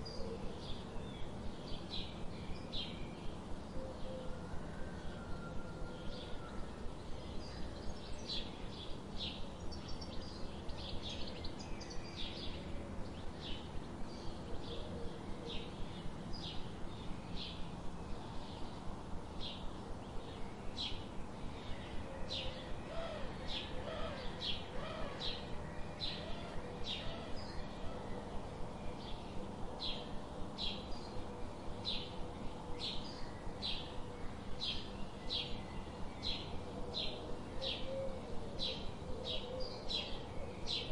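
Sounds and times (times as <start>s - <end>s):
background hiss: 0.0s - 40.9s
lower gliding bird calls: 22.1s - 28.6s.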